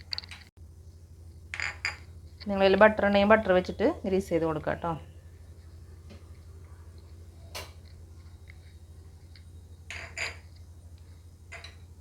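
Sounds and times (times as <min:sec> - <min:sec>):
low steady hum: 0:00.0 - 0:12.0
kitchenware clinking: 0:01.6 - 0:02.1, 0:09.9 - 0:10.5, 0:11.5 - 0:11.9.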